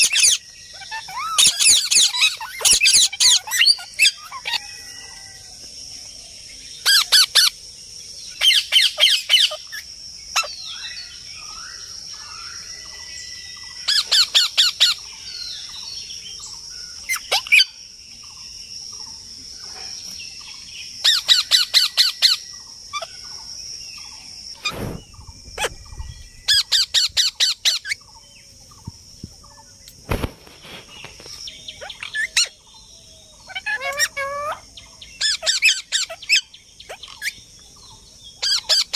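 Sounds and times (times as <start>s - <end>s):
parrots squawking: 0.0s - 5.3s, 8.4s - 10.6s, 25.6s - 25.9s, 31.8s - 32.5s, 33.4s - 34.6s, 35.2s - 37.3s, 38.4s - 38.9s
soft chirps: 16.9s - 38.9s.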